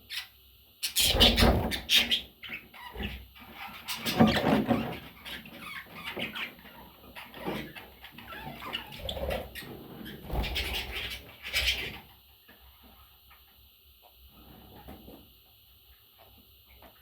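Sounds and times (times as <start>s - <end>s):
budgerigars chirping and chattering: 0.1s - 12.0s.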